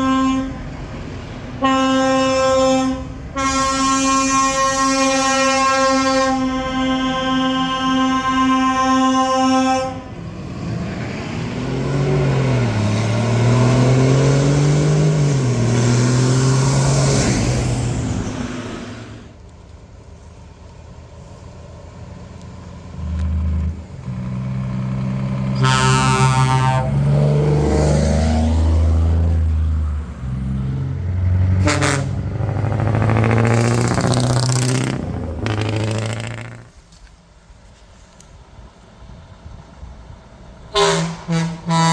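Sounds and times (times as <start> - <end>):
air horn blast: 0.0 - 0.7, 1.6 - 10.2, 25.6 - 27.1, 31.5 - 32.8, 40.7 - 41.9
vehicle horn: 0.0 - 0.7, 1.6 - 10.2, 25.6 - 27.0, 31.6 - 32.2, 40.7 - 41.9
diesel trucks revving: 0.0 - 19.5, 21.0 - 36.9, 39.2 - 41.9.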